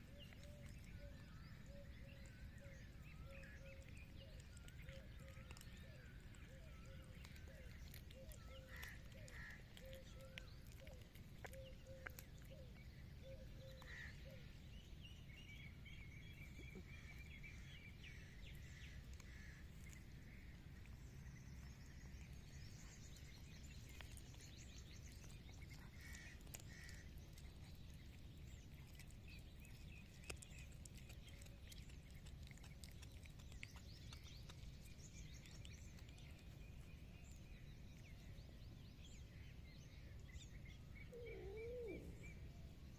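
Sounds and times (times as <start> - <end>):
faint outdoor rumble: 0.0 - 42.9
faint high chirps: 41.0 - 42.5.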